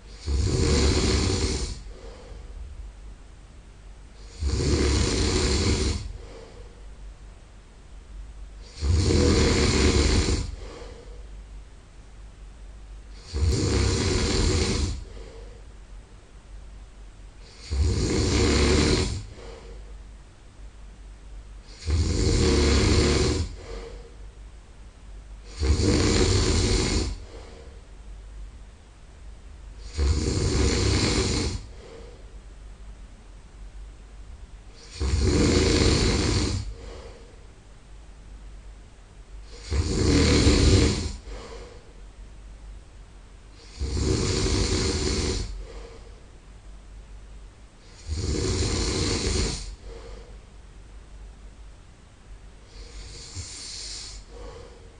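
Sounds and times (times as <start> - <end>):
man snoring: 0.0 - 2.4, 4.2 - 6.6, 8.6 - 11.2, 13.1 - 15.6, 17.4 - 19.9, 21.6 - 24.2, 25.4 - 27.8, 29.8 - 32.2, 34.7 - 37.3, 39.4 - 41.9, 43.5 - 46.1, 47.8 - 50.3, 52.6 - 54.9
soft breathing: 0.0 - 2.9, 5.2 - 7.1, 8.6 - 11.6, 13.0 - 16.0, 16.9 - 20.2, 21.4 - 24.5, 25.4 - 28.5, 29.7 - 32.7, 34.7 - 37.6, 39.3 - 42.2, 43.5 - 46.5, 49.0 - 50.6, 52.6 - 54.9.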